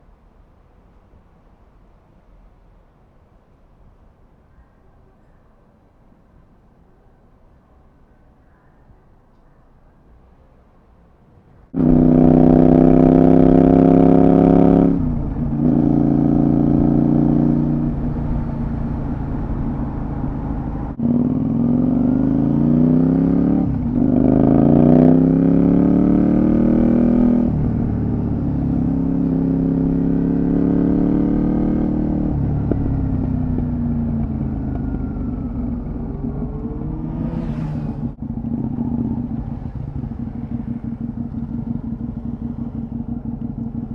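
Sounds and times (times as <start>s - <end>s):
motorcycle engine revving: 11.8s - 43.9s.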